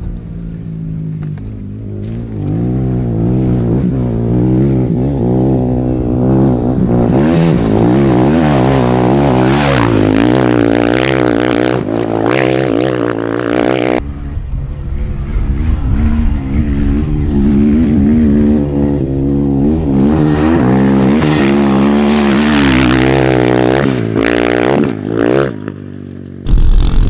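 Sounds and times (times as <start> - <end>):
dirt bike engine revving: 1.8 - 25.6
wind rushing: 14.0 - 20.1.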